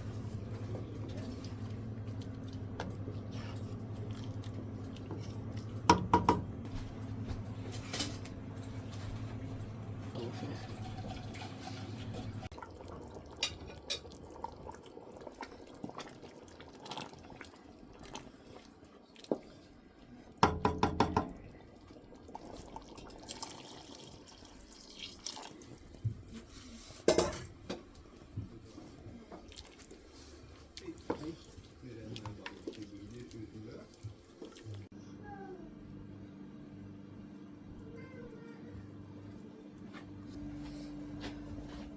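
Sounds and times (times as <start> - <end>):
liquid pouring and dripping: 22.3 - 26.1
pots and utensils clinking: 27.0 - 27.8.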